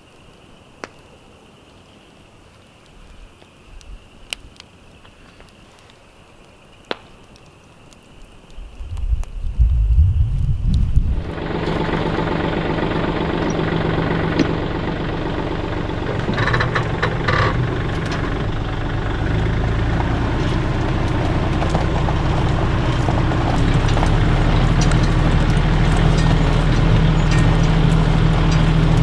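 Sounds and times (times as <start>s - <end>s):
tractor engine running: 9.8s - 29.0s
short clatter: 15.9s - 29.0s.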